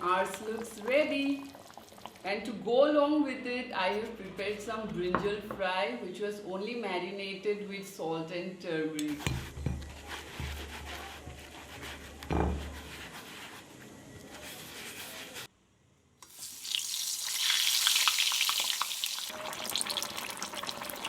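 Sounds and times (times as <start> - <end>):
slices frying in hot oil: 16.2 - 21.0.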